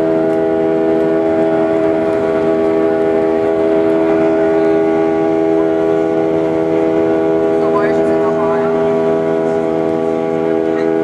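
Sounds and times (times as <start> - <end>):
jet engines humming in cabin: 0.0 - 11.0.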